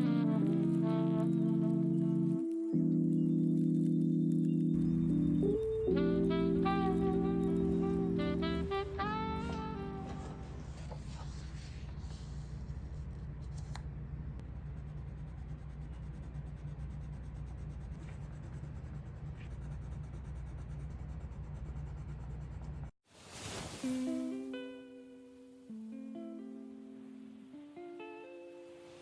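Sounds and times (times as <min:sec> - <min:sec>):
background music: 0:00.0 - 0:10.8, 0:23.9 - 0:29.0
coloured pencil scratching on paper: 0:04.4 - 0:13.1, 0:14.4 - 0:23.0.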